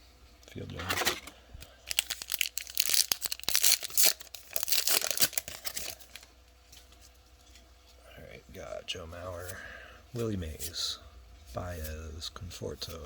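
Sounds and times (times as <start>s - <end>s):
foil wrapper torn and crinkled: 1.8s - 6.3s.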